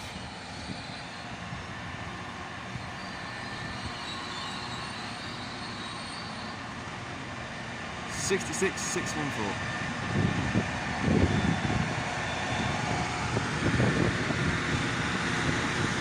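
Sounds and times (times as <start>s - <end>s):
diesel locomotive engine running: 0.0s - 16.0s
trains moving: 0.0s - 16.0s.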